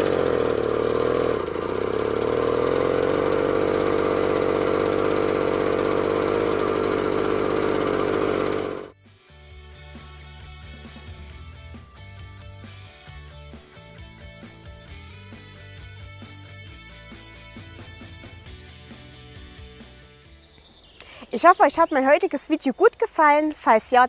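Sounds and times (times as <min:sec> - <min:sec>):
moped engine running: 0:00.0 - 0:08.9.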